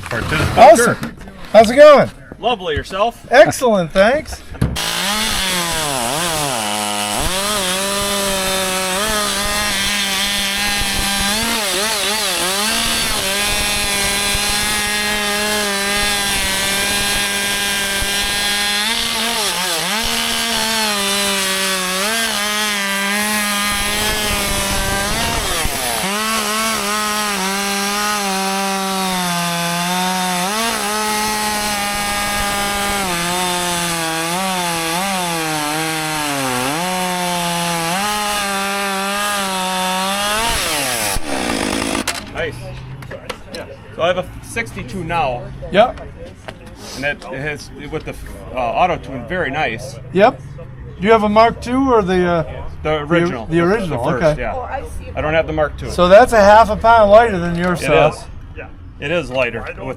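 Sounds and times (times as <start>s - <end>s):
chainsaw cutting wood: 4.7s - 42.5s.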